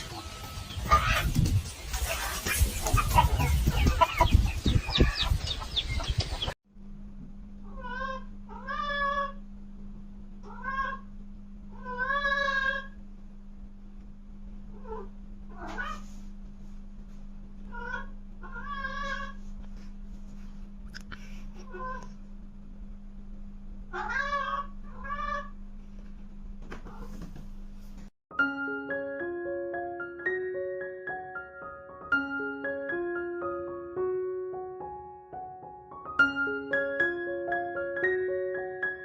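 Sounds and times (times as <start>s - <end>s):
steady low hum: 0.0s - 28.1s
cat meowing: 23.9s - 25.5s.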